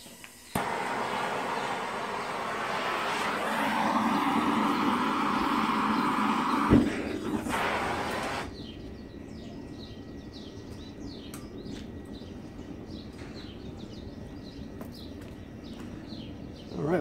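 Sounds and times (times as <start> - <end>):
furnace burner flame rumble: 0.0 - 17.0
small birds chirping: 0.0 - 17.0
loud rushing noise: 0.6 - 8.6.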